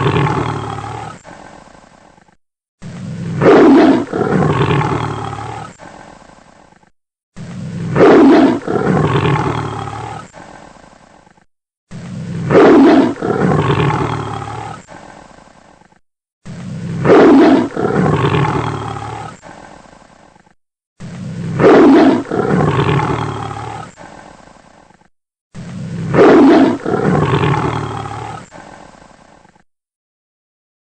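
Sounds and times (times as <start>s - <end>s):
tiger roaring: 0.0s - 1.6s, 2.8s - 6.2s, 7.4s - 10.5s, 11.9s - 15.2s, 16.5s - 19.5s, 21.0s - 24.1s, 25.6s - 28.9s.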